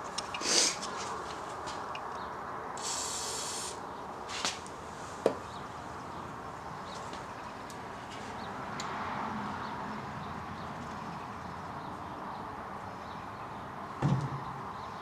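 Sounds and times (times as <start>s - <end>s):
aerosol can spraying: 2.8s - 3.8s.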